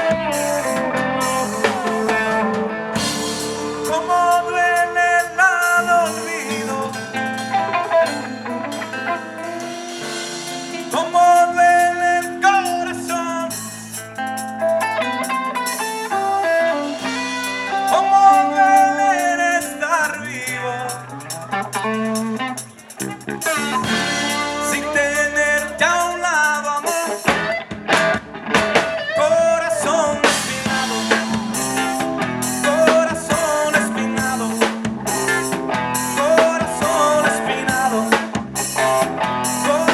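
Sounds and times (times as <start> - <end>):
drum hits: 0.0 - 14.0, 23.6 - 26.4, 30.1 - 39.9
blues-rock band playing: 0.0 - 39.9.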